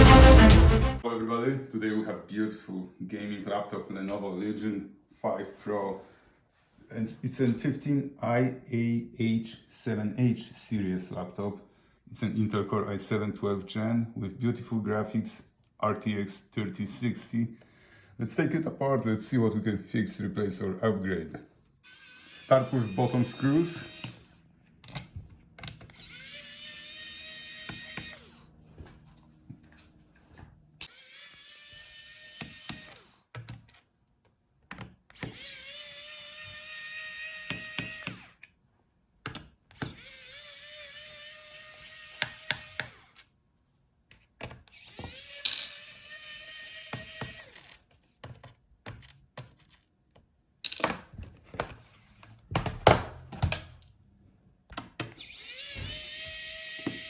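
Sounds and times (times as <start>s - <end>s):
electric screwdriver motor hum: 21.9s - 24.3s, 25.9s - 28.4s, 30.8s - 33.2s, 35.2s - 38.4s, 39.8s - 43.3s, 44.7s - 47.8s, 55.2s - 57.0s.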